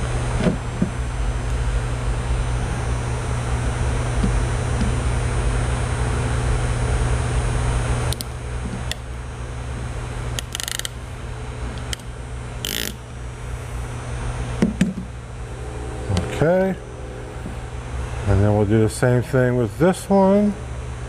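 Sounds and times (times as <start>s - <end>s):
machine whir with hum: 0.0s - 21.0s
ratchet clicks: 10.4s - 11.0s, 11.8s - 13.0s.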